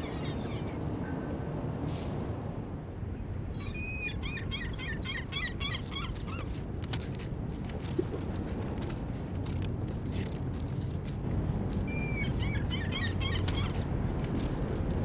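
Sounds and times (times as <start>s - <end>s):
bird calls: 3.6s - 14.9s.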